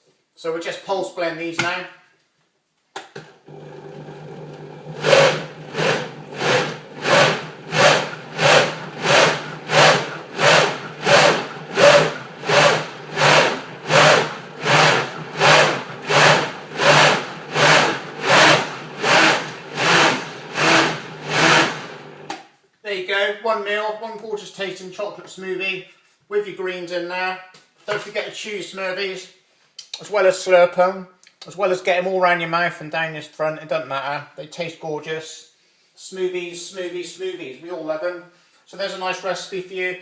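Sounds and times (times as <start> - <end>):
blender motor pulsing: 3.4 - 22.3.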